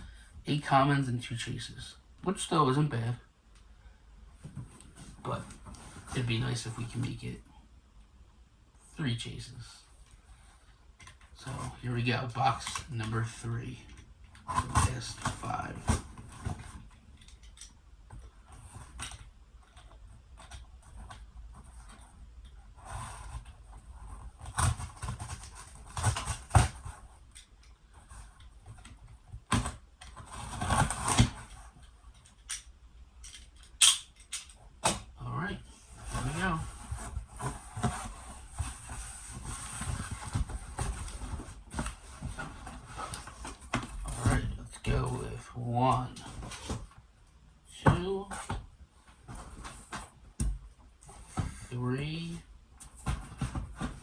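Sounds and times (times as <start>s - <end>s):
cardboard box rustling and scraping: 35.8s - 44.6s.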